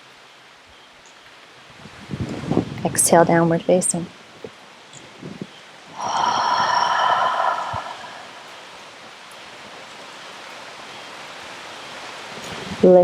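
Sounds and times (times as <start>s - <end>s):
rain: 0.0s - 13.0s
hissing exhale: 6.0s - 8.9s.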